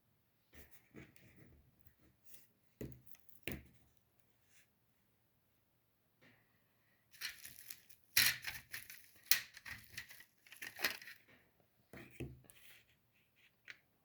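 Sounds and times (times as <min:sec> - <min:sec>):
packaging crinkling and rustling: 0:07.1 - 0:11.3.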